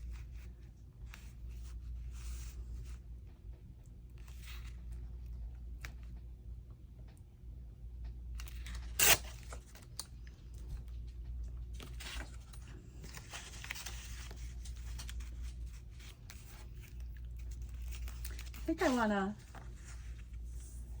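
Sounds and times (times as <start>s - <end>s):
paper sharp crack: 8.4s - 10.2s, 11.7s - 20.3s
paper rustling and scraping: 10.7s - 21.0s.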